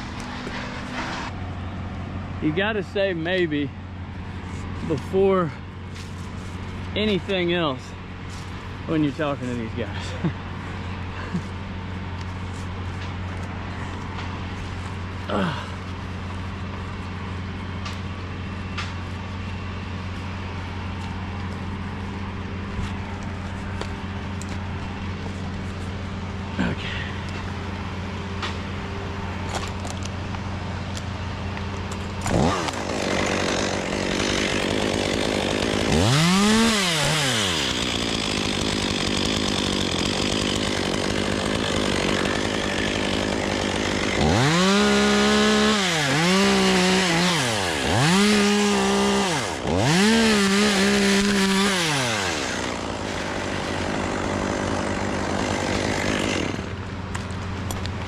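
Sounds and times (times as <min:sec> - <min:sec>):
chainsaw idling and revving: 0:04.6 - 0:12.3, 0:13.7 - 0:17.0, 0:31.6 - 0:57.9.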